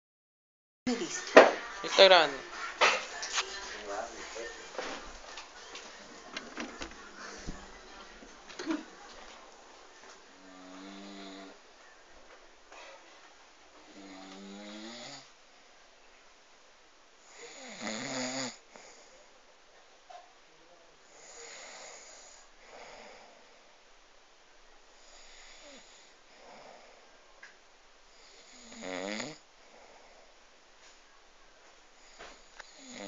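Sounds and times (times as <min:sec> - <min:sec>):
person snoring: 0:10.4 - 0:11.6, 0:13.8 - 0:15.3, 0:17.3 - 0:19.0, 0:21.2 - 0:23.4, 0:28.2 - 0:29.4, 0:32.6 - 0:33.0.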